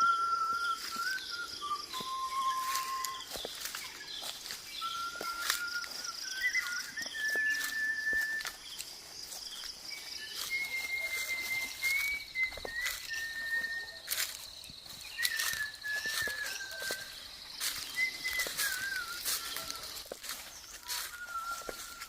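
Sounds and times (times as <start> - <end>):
birds whistling calls: 0.0 - 22.0.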